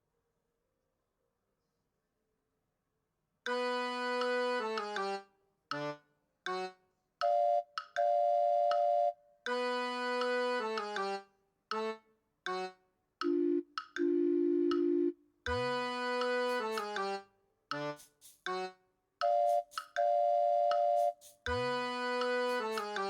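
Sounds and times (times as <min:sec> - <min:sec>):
synthesised jingle melody: 0:19.2 - 0:21.3.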